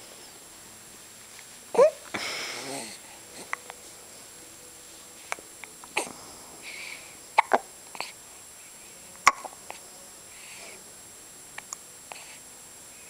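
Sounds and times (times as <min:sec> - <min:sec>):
baby hiccuping: 0:07.4 - 0:08.1, 0:09.3 - 0:09.5.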